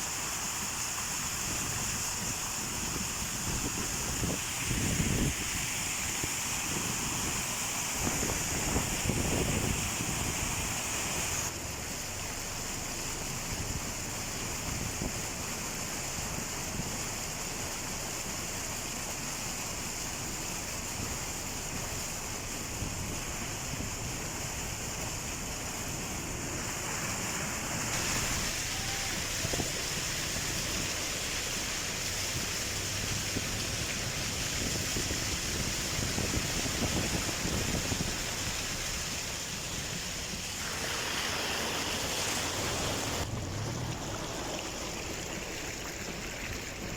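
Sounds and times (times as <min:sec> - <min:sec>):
floodwater rushing: 0:00.0 - 0:46.9
wind on microphone: 0:01.4 - 0:11.5, 0:25.9 - 0:31.1, 0:32.0 - 0:43.7.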